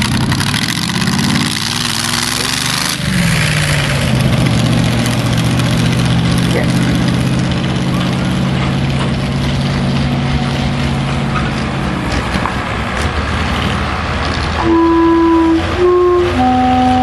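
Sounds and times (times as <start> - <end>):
heavy engine running: 0.0 - 17.0
outdoor noise: 0.0 - 17.0
horn blasts: 14.6 - 17.0.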